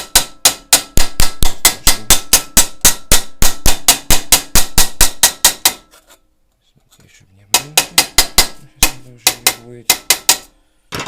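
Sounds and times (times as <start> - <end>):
hammer striking metal sheet: 0.0 - 6.0, 7.6 - 11.0.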